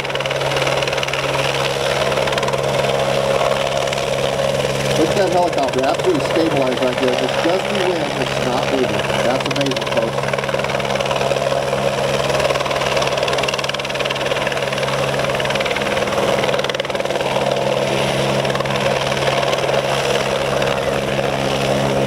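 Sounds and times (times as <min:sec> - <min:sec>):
helicopter hovering: 0:00.0 - 0:22.0.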